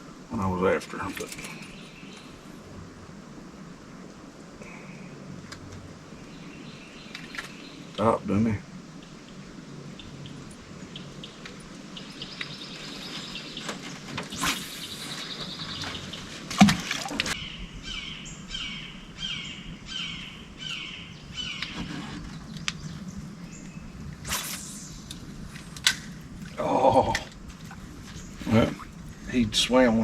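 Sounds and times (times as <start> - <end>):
songbirds calling: 0.0 - 30.0
brief hiss: 14.2 - 15.5, 24.2 - 26.2.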